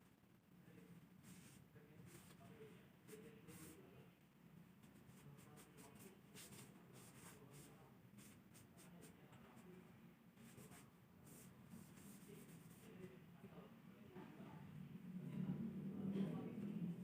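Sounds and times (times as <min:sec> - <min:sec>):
low room hum: 0:00.0 - 0:17.0.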